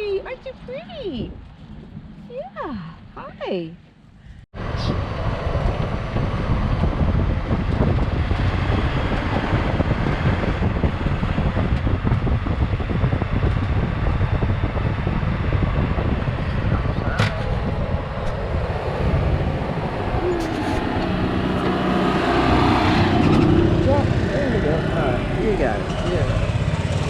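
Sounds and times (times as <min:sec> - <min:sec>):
wind buffeting microphone: 0:00.0 - 0:03.5, 0:04.3 - 0:27.0
vehicle low rumble: 0:00.0 - 0:27.0.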